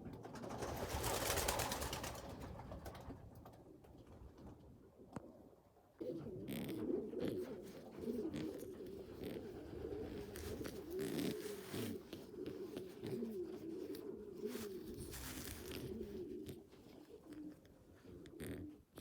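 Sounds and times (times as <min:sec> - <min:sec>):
pigeons cooing: 0:06.0 - 0:19.0.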